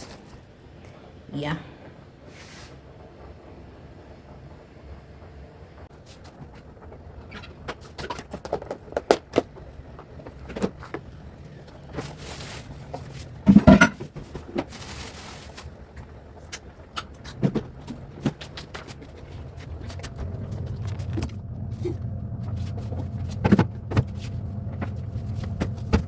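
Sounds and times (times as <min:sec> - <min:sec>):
thumps: 0:13.5 - 0:14.3.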